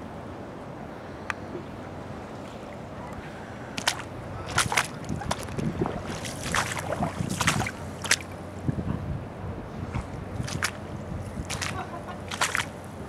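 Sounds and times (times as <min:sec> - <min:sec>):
footsteps splashing through water: 0:03.8 - 0:08.4, 0:10.0 - 0:13.0.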